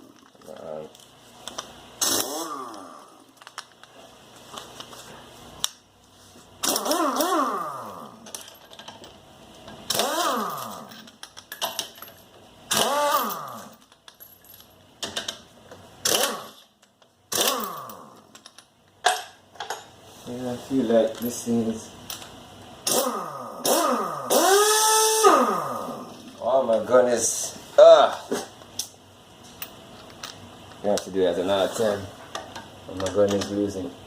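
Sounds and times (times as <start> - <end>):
impact wrench whirring: 2.0 - 3.2, 6.6 - 8.2, 9.8 - 11.2, 12.7 - 13.8, 16.0 - 16.7, 17.3 - 18.3, 22.8 - 26.2.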